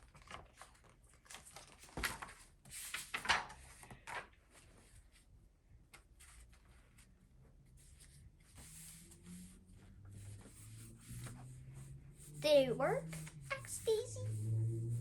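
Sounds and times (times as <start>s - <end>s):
book page rustling: 0.0s - 7.2s.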